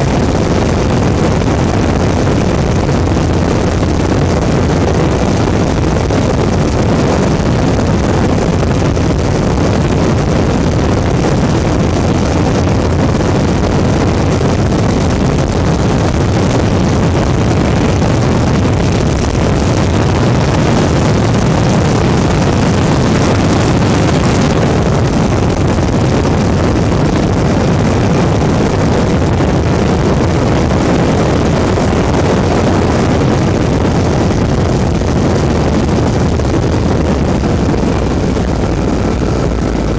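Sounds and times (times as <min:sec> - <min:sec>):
aircraft engine and propeller: 0:00.0 - 0:39.9
wind on microphone: 0:00.0 - 0:39.9.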